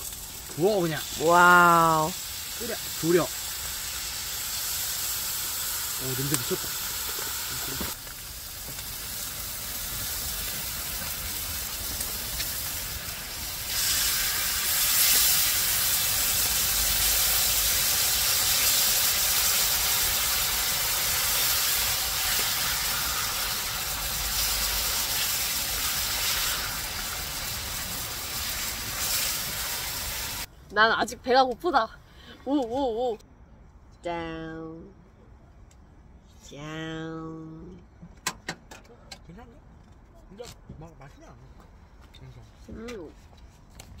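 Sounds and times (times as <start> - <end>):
sauce sizzling on grilling eel: 0.0 - 30.5.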